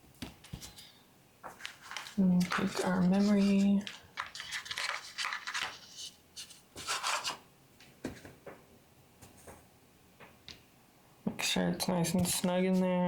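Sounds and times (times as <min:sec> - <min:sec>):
rubbing and scraping: 0:01.5 - 0:07.4.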